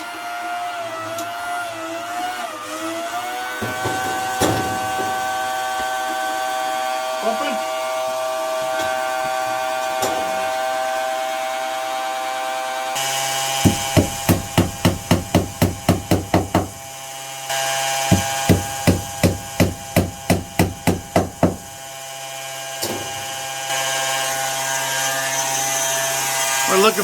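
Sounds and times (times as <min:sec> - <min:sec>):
hand pump knocking strokes: 0:03.6 - 0:06.6, 0:13.6 - 0:16.8, 0:18.0 - 0:21.8.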